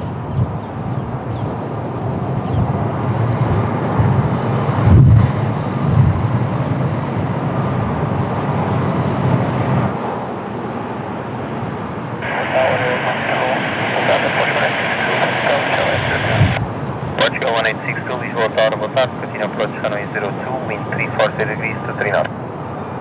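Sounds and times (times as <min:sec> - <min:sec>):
wind buffeting microphone: 0:00.0 - 0:10.0, 0:15.9 - 0:23.0
jet airliner engines: 0:00.0 - 0:23.0.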